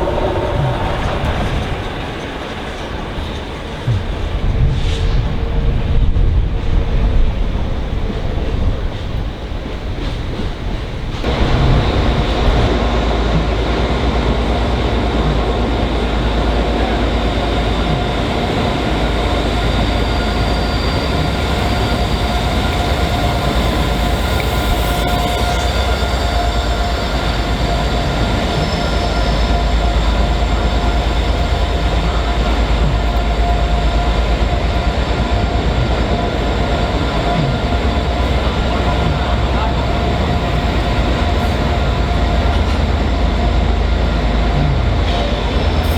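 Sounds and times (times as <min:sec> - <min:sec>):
train wheels rumbling on rails: 0:00.0 - 0:45.9
thin steady whine: 0:11.2 - 0:44.9.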